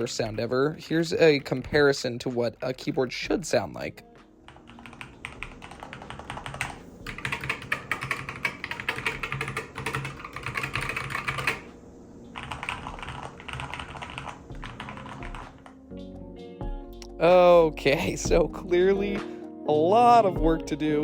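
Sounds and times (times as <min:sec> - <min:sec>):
mechanical keyboard typing: 0:04.5 - 0:15.8.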